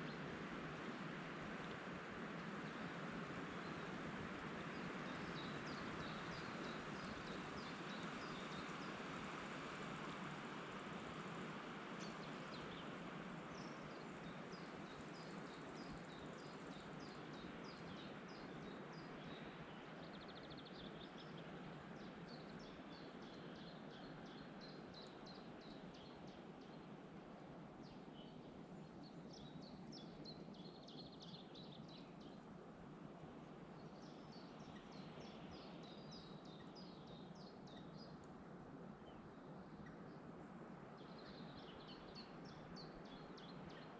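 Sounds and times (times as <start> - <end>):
wind hiss: 0.0 - 28.9
songbirds singing: 2.4 - 9.4, 11.2 - 43.9.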